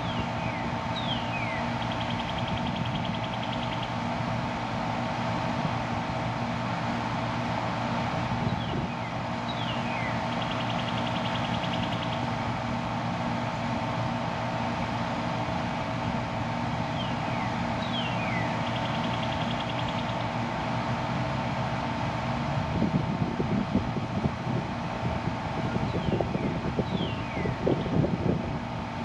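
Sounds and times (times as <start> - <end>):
bird calling: 0.0 - 4.0, 8.5 - 12.4, 16.8 - 20.4
air conditioner unit humming: 0.0 - 29.0.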